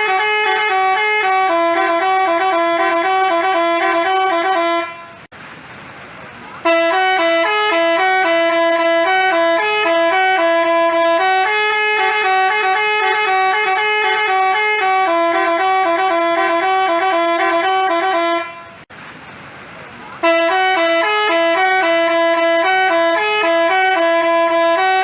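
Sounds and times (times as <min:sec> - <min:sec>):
musical bus air horn: 0:00.0 - 0:05.3, 0:06.6 - 0:18.9, 0:20.2 - 0:25.0.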